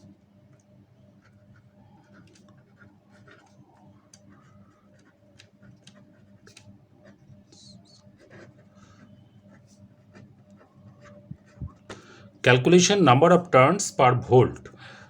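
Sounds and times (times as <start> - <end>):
pen scratching on paper: 0.0 - 11.9
steady low hum: 0.0 - 15.0.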